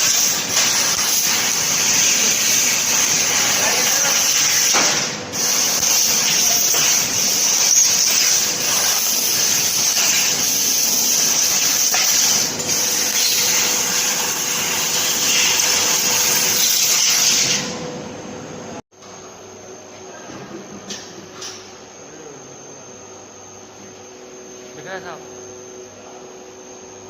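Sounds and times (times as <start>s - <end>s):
laser cutting machine hiss: 0.0s - 17.7s.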